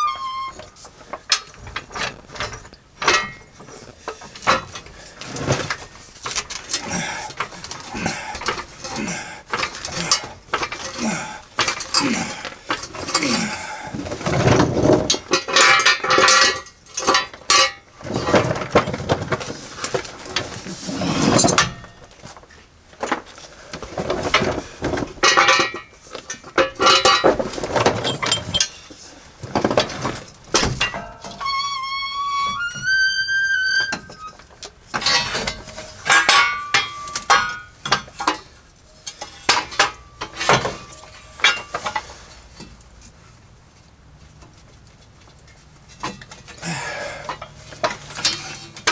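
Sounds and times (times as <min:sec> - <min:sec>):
rising clear tones: 0:00.0 - 0:00.7
metal hand tools clanking: 0:00.0 - 0:22.1, 0:23.0 - 0:42.9, 0:45.9 - 0:48.9.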